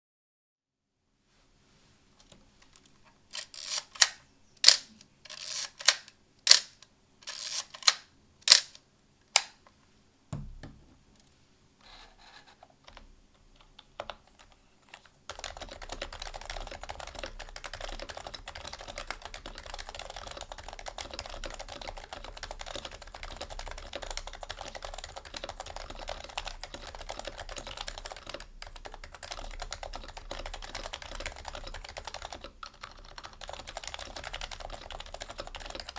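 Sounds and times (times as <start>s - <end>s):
soft clicks: 2.2s - 9.8s
fast typing on a keyboard: 12.9s - 35.9s.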